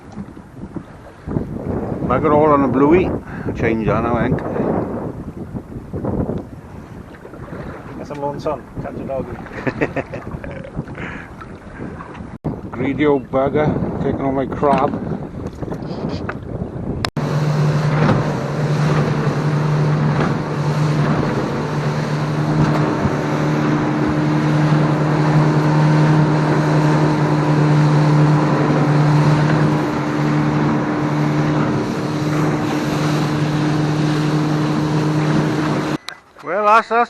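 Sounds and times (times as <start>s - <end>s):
boat engine droning: 0.0s - 13.0s, 13.7s - 37.0s
water noise: 0.0s - 37.0s
wind: 0.0s - 37.0s
higher hum: 17.1s - 36.1s.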